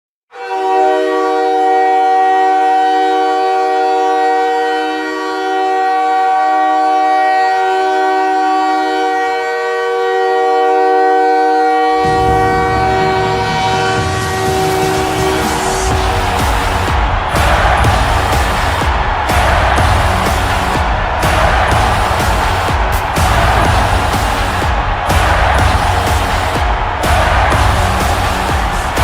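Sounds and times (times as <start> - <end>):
goal horn multi-note chord: 0.3 - 29.0
low rumbling noise: 12.0 - 29.0.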